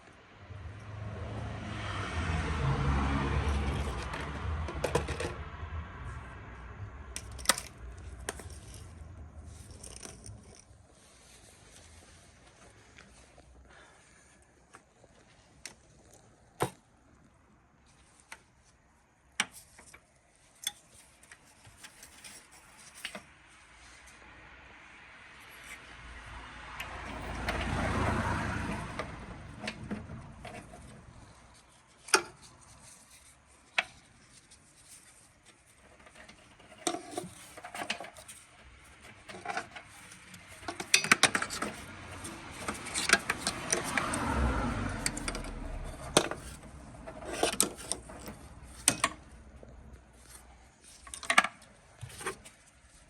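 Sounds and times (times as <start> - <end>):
metal tools clinking and scraping: 39.0 - 44.2, 45.0 - 49.3.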